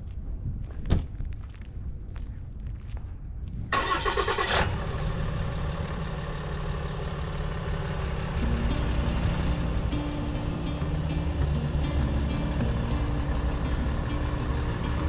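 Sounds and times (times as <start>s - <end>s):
vehicle engine starting and idling: 3.7s - 15.0s.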